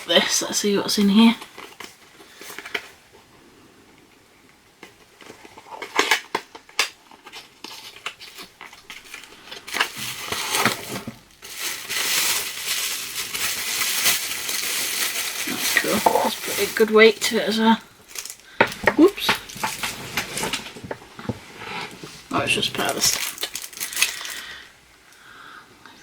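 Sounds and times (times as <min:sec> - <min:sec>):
packing material rustling: 0:04.8 - 0:24.7.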